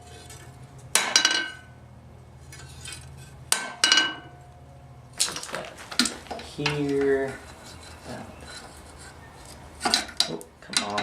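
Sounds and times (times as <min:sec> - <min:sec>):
hammer striking steel on anvil: 0:01.0 - 0:01.6, 0:03.5 - 0:04.4.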